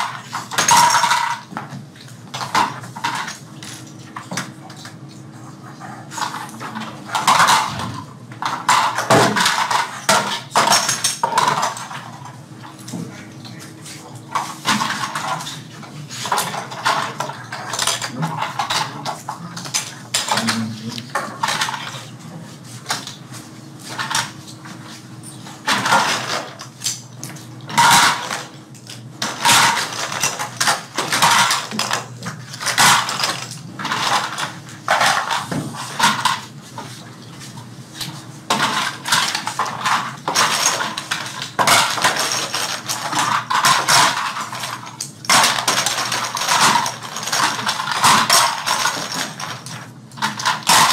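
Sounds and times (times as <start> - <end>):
toy parts clicking and clattering: 0.0 - 1.5, 27.8 - 36.5, 38.5 - 50.9.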